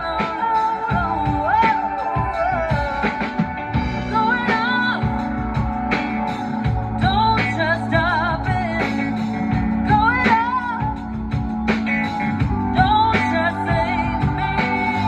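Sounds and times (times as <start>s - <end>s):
person singing: 0.0s - 5.4s, 12.7s - 15.0s
bass guitar: 0.0s - 15.0s
keyboards: 0.0s - 15.0s.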